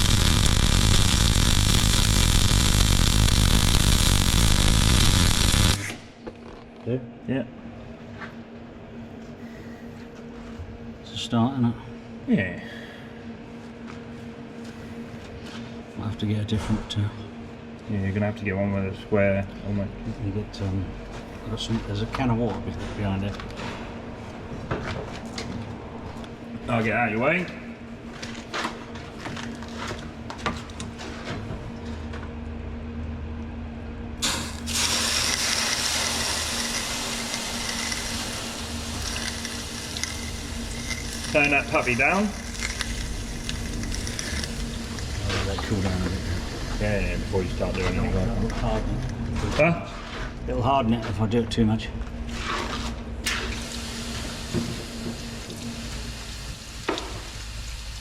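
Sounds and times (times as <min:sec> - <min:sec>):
water sizzling on hot steel: 0:00.0 - 0:06.0, 0:34.2 - 0:45.3, 0:53.3 - 0:58.0
welding arc crackling: 0:00.0 - 0:06.2, 0:34.2 - 0:49.3, 0:53.2 - 0:58.0
low steady hum: 0:00.0 - 0:58.0.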